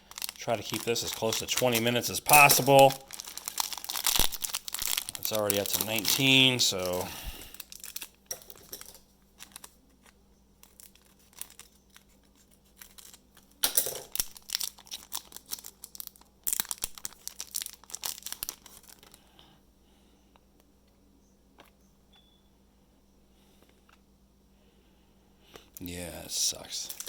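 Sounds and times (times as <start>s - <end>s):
plastic wrapper crinkling: 0.0s - 19.3s, 26.6s - 27.0s.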